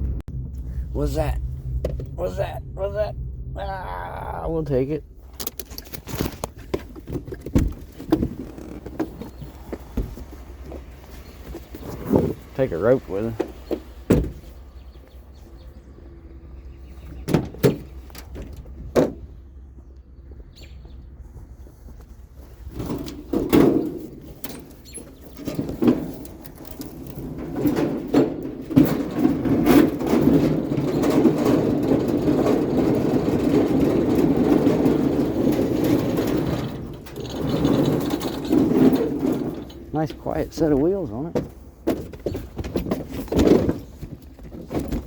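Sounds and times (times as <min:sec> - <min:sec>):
wheels rumbling and rattling: 0:00.0 - 0:45.0
scrap item knocks and clunks: 0:05.4 - 0:12.6, 0:22.6 - 0:40.0, 0:41.3 - 0:45.0.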